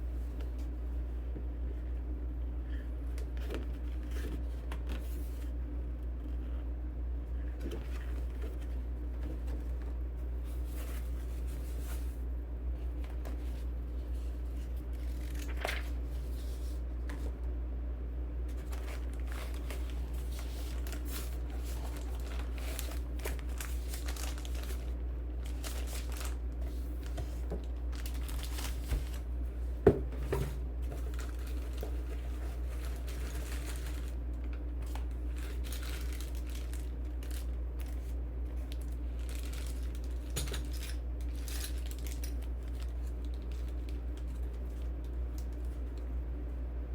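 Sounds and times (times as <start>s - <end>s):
packaging crinkling and rustling: 12.9s - 17.4s, 18.5s - 46.0s.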